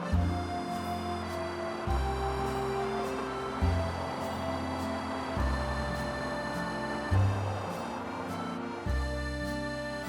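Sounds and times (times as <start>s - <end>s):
slow calm music with deep bass: 0.0s - 10.0s.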